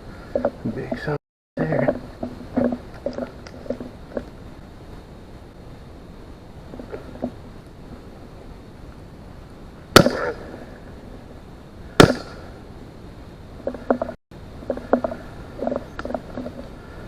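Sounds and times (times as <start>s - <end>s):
pistol shots: 10.0s - 10.4s, 12.0s - 12.5s.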